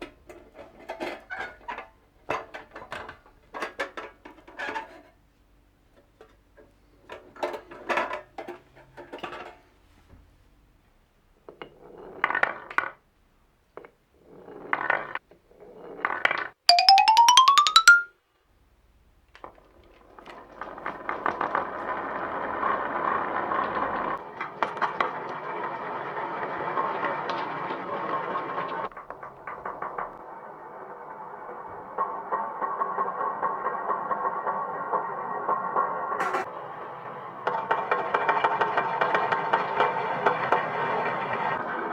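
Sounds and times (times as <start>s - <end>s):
wooden balls clicking in marble run: 16.7s - 18.1s.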